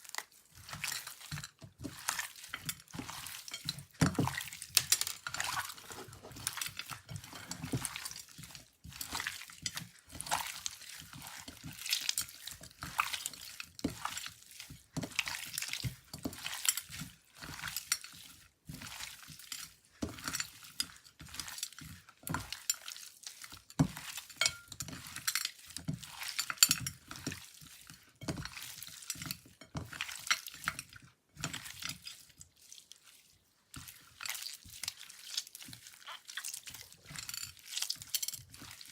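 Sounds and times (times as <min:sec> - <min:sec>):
slime squelching: 0:00.0 - 0:14.6, 0:31.6 - 0:38.9.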